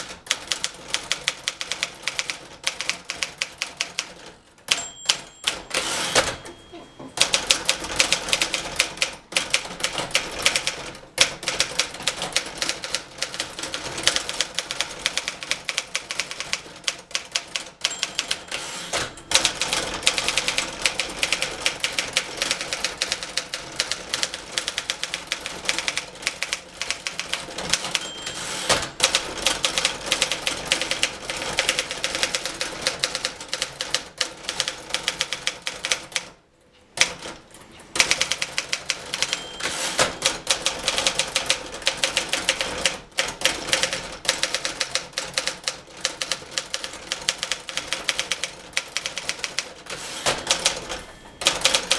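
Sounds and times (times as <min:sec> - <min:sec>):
typewriter keys clacking: 0:37.9 - 0:51.9.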